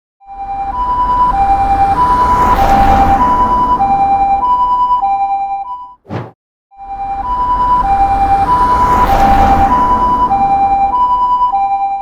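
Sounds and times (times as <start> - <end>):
ambulance two-tone siren: 0.2 - 6.0, 6.7 - 12.0
brief sharp burst: 6.1 - 6.4.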